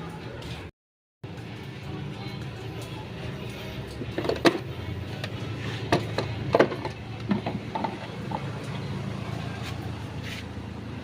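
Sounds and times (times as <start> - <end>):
engine humming: 0.0 - 11.0.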